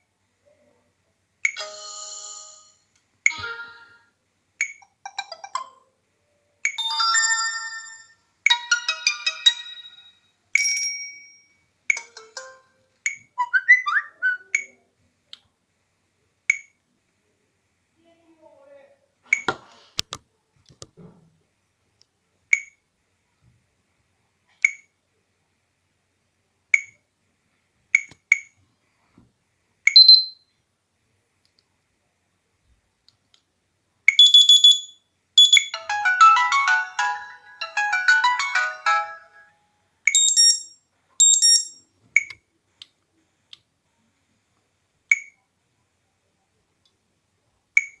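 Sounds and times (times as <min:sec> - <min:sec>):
ringtone melody: 0:01.6 - 0:04.1, 0:06.8 - 0:12.8, 0:30.0 - 0:30.3, 0:34.2 - 0:41.8
short electronic beeps: 0:29.9 - 0:30.4, 0:34.2 - 0:35.8
bright chimes: 0:35.4 - 0:39.5.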